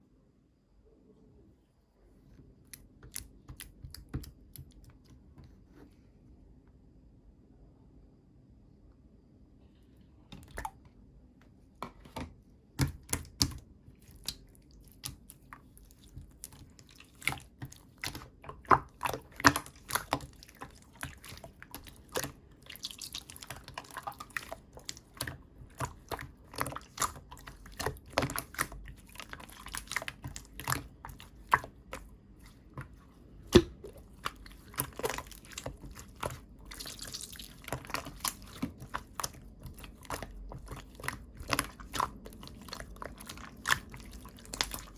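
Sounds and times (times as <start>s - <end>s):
slime squished by hand: 12.8s - 44.9s.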